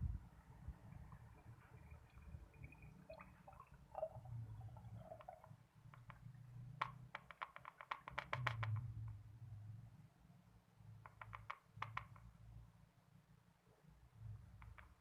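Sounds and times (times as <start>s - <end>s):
sharp water drips: 1.0s - 6.3s
liquid being strained: 1.8s - 5.6s.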